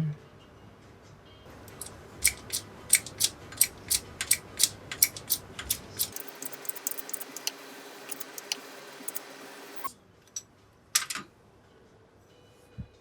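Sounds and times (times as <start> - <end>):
metallic clicks and rattling: 1.6 - 10.4
faint steady hum: 5.1 - 9.9.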